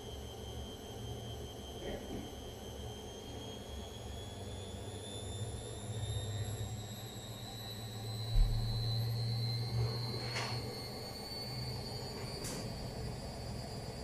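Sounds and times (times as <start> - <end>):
washing machine spinning: 5.2 - 14.0.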